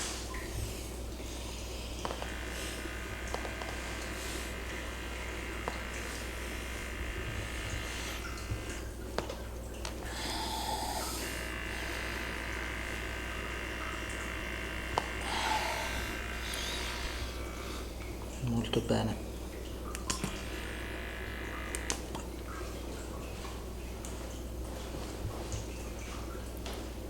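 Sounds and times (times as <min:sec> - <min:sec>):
small electric motor buzzing: 0:00.0 - 0:09.2, 0:10.0 - 0:18.2, 0:20.0 - 0:22.2.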